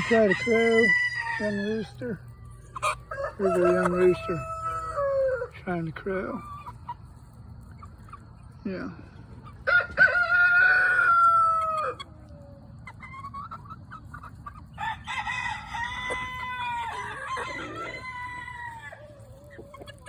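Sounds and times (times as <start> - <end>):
young rooster crowing: 0.0 - 2.2, 2.8 - 5.5, 9.6 - 12.1, 14.7 - 19.4
hens clucking: 0.0 - 20.0.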